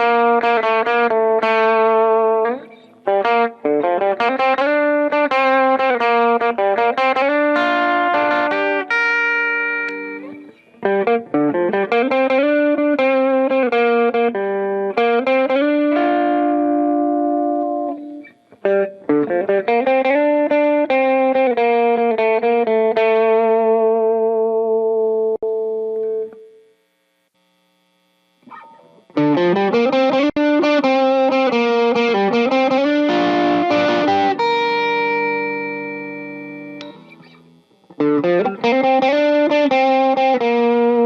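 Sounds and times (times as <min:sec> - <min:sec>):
electric guitar chords: 0:00.0 - 0:41.0.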